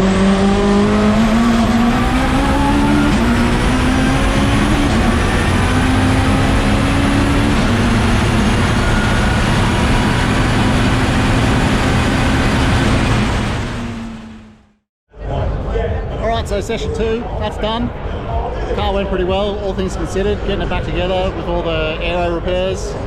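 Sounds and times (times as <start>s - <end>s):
steady rush of noise: 0.0s - 14.4s
race car engine accelerating: 0.0s - 14.8s.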